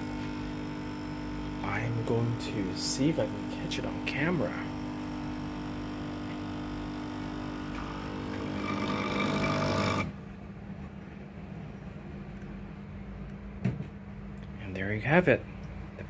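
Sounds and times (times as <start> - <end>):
coffee machine pump humming: 0.0 - 10.3.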